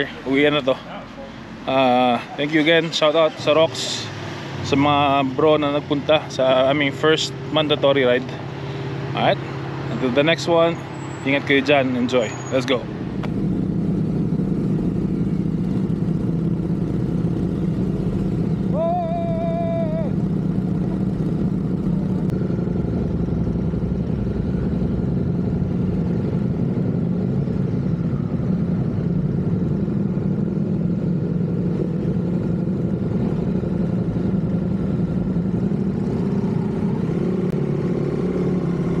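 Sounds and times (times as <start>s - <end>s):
motorcycle engine running: 13.1s - 39.0s.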